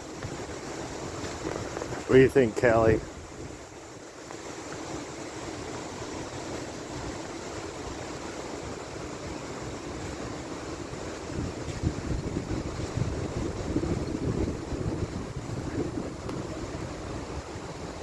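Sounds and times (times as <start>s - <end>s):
waves breaking on beach: 0.0s - 18.0s
wind blowing on microphone: 0.0s - 18.0s.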